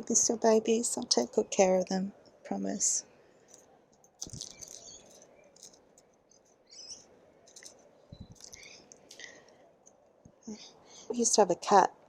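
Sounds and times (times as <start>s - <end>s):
plant and pot rustling: 4.2s - 9.5s.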